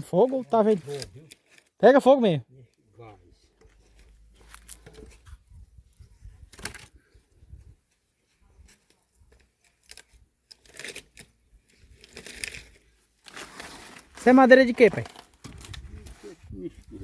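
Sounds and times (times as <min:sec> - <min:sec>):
leafy branches rustling: 0:03.7 - 0:07.0, 0:07.8 - 0:17.0.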